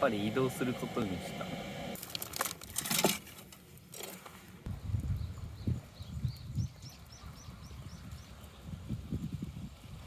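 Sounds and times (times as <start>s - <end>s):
wind buffeting microphone: 4.7s - 10.0s.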